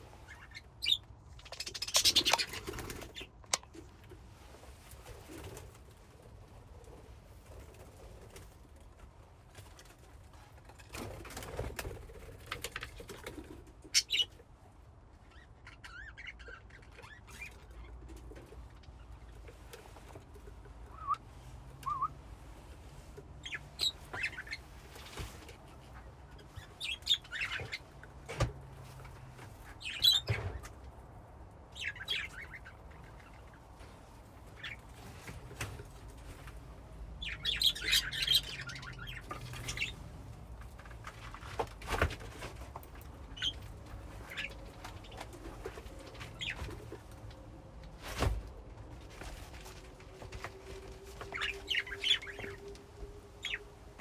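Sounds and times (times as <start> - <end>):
budgerigars chirping and warbling: 0.2 - 3.3, 13.9 - 14.4, 15.3 - 18.0, 23.4 - 25.2, 26.4 - 28.0, 29.6 - 30.6, 31.7 - 33.7, 34.5 - 34.8, 37.2 - 40.0, 43.3 - 46.8, 51.2 - 52.6, 53.4 - 53.7
wings fluttering: 1.4 - 3.9, 4.8 - 8.8, 9.6 - 14.3, 37.2 - 54.0.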